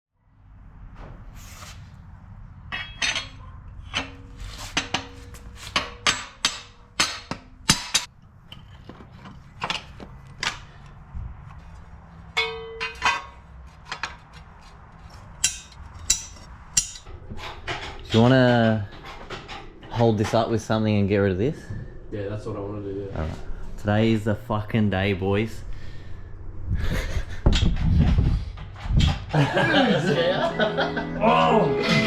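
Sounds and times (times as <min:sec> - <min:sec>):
metal tools clanking: 0:02.7 - 0:10.7, 0:12.4 - 0:14.2.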